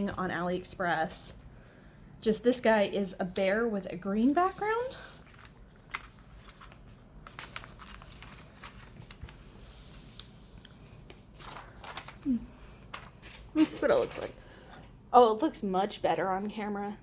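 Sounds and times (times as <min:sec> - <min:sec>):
canvas and packaging rustling: 0:04.0 - 0:14.3.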